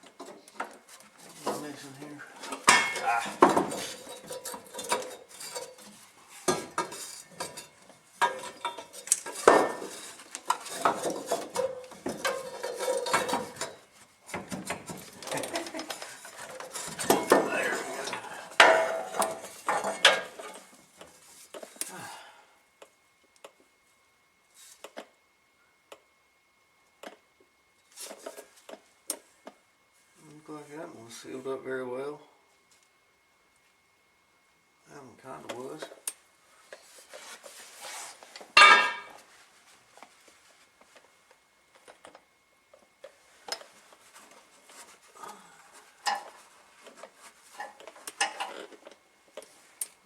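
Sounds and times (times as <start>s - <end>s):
metal tools clanking: 2.4s - 5.8s.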